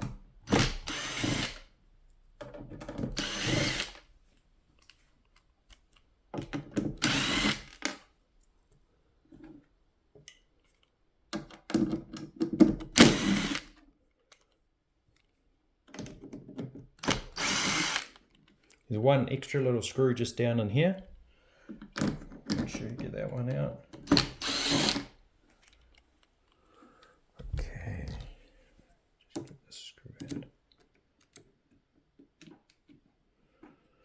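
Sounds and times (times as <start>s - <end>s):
power drill bursts: 0.5s - 1.6s, 3.2s - 4.0s, 7.0s - 7.8s, 13.0s - 13.7s, 17.1s - 18.2s, 24.1s - 25.1s.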